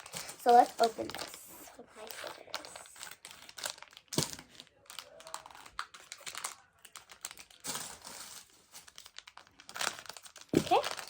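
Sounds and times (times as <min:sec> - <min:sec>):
plastic crinkling: 0:00.0 - 0:11.0.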